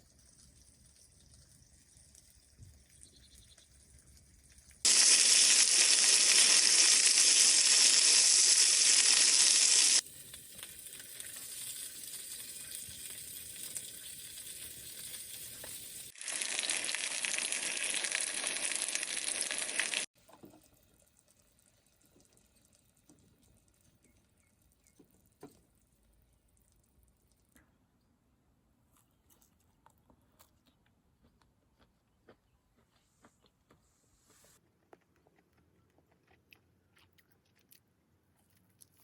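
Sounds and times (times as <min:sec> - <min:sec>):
food sizzling in a pan: 0:04.8 - 0:20.1.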